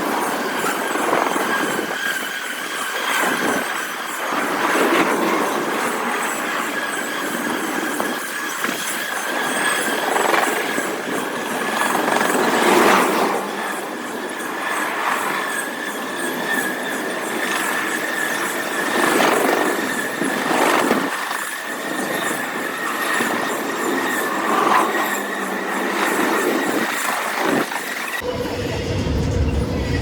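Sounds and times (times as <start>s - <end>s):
train wheel squeal: 0.0s - 30.0s
deep low rumble: 28.2s - 30.0s
train cars clanking: 28.2s - 30.0s.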